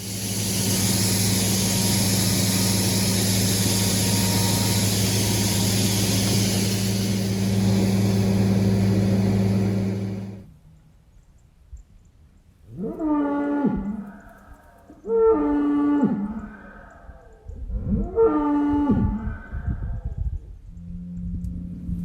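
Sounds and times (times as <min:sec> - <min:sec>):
farm machinery engine droning: 0:00.0 - 0:10.5.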